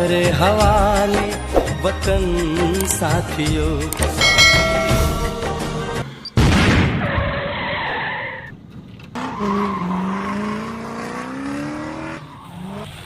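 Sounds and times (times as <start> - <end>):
loud vehicle burst: 6.4 - 7.6.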